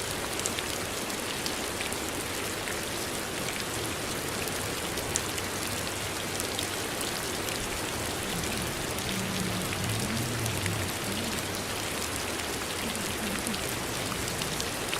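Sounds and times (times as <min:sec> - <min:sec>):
steady rain hiss: 0:00.0 - 0:14.9
raindrop ticks: 0:06.4 - 0:14.9.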